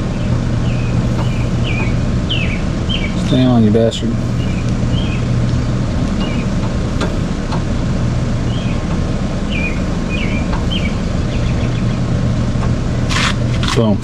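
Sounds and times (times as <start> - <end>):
low mechanical rumble: 0.0 - 14.0
bird chirping: 0.1 - 3.6, 4.3 - 5.3.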